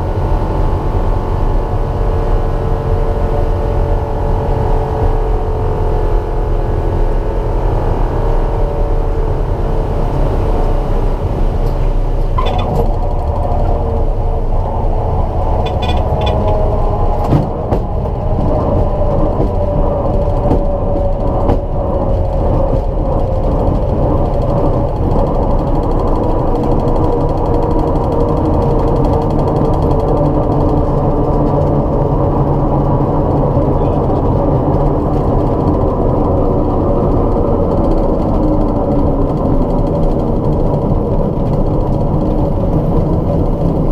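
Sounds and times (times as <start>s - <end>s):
aircraft engine and propeller: 0.0s - 43.9s
metallic grinding and vibration: 11.6s - 43.7s.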